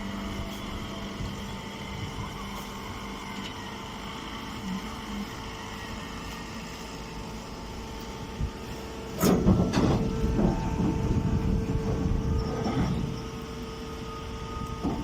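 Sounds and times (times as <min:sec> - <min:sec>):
baler machine humming: 0:00.0 - 0:15.0
machine knocking and clattering: 0:09.2 - 0:11.2.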